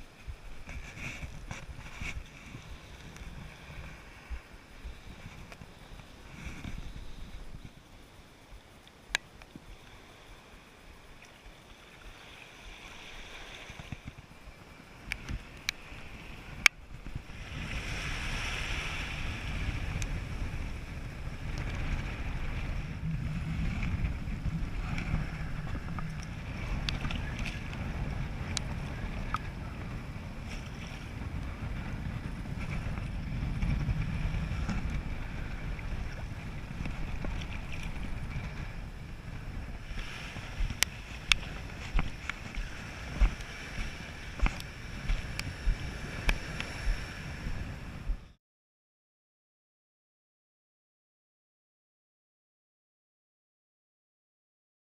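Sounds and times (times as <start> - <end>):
wind buffeting microphone: 0.0 - 7.9, 13.3 - 48.4
surf washing in: 0.0 - 48.3.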